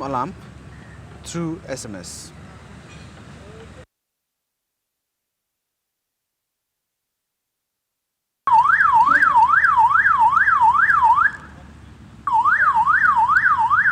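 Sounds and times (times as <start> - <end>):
alarm siren wailing: 8.5 - 11.5, 12.2 - 13.9.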